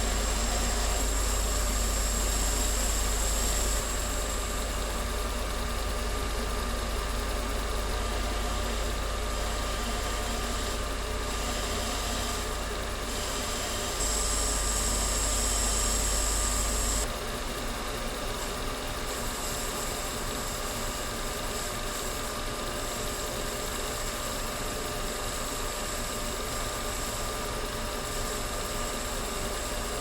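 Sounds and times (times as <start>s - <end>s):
machine tool motor whining: 13.9s - 17.1s.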